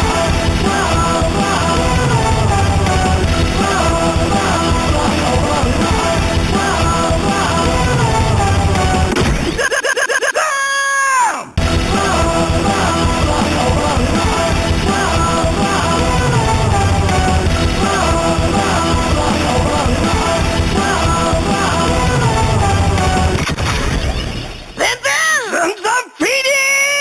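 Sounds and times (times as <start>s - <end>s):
rock music with shouted vocals: 0.0s - 25.7s.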